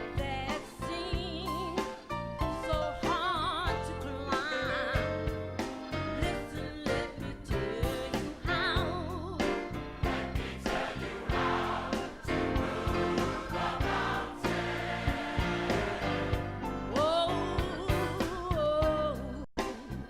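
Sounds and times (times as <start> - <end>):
live band: 0.0 - 20.0
drum beat and bass: 9.4 - 19.0
gospel choir singing: 9.5 - 18.3.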